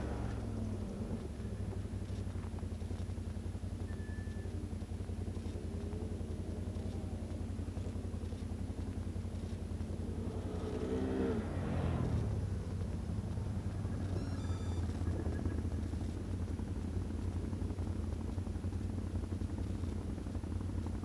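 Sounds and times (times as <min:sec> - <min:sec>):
vehicle engine passing: 0:00.0 - 0:02.5, 0:05.3 - 0:16.2.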